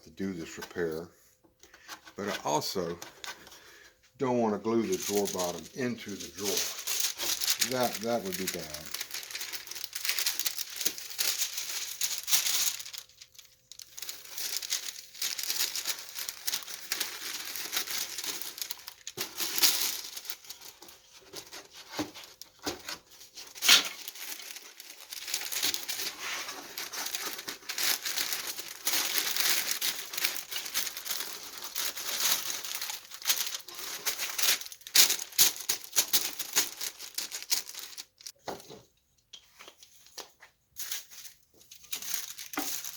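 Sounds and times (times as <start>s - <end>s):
wax paper crinkling: 2.2s - 38.4s, 39.5s - 42.9s.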